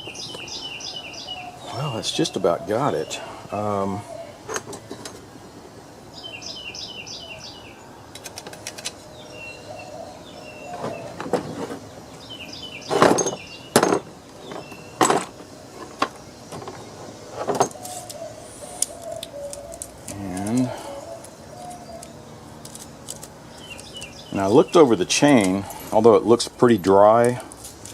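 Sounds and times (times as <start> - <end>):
songbird chirping: 0.0 - 27.5
metal parts and tools knocking: 12.9 - 16.8.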